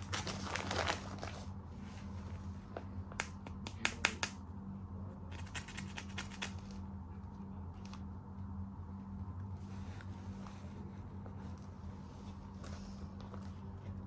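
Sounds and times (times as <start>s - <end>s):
steady low hum: 0.0s - 14.0s
sharp clicks and snaps of toys: 3.2s - 4.4s.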